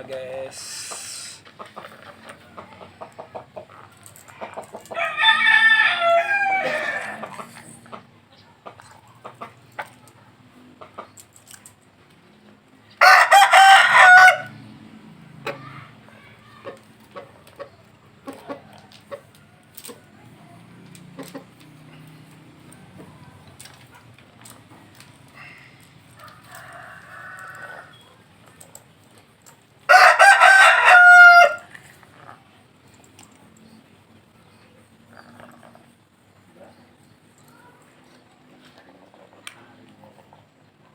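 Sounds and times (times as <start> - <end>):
faint drawn-out call: 0.5 - 1.6
faint clucks: 0.8 - 5.0
rooster crowing: 4.9 - 7.5, 13.0 - 14.6, 26.1 - 28.1, 29.9 - 31.8.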